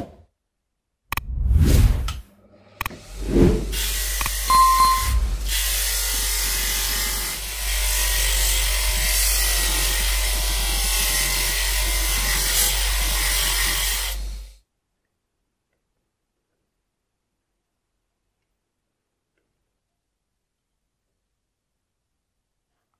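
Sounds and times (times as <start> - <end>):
power tool grinding: 5.1 - 14.5.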